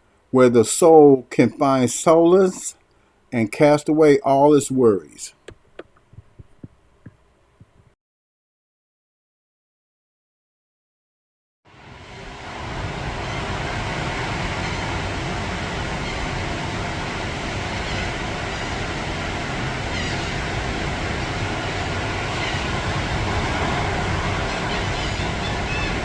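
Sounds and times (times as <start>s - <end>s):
ocean surf roaring: 0.4s - 2.8s, 11.7s - 26.0s
wind: 11.7s - 26.0s.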